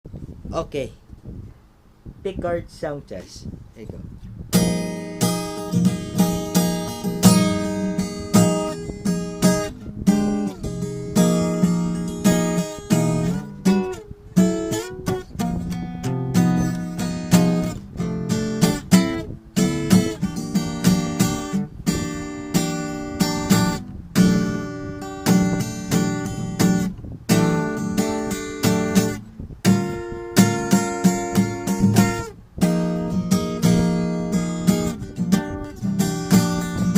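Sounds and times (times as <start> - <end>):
guitar chords strummed: 4.4 - 36.9.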